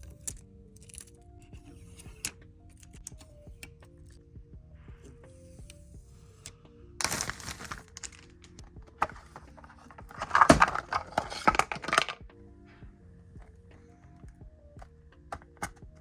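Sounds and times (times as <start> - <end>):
background music: 0.0 - 16.0
rustling packaging: 7.0 - 12.2.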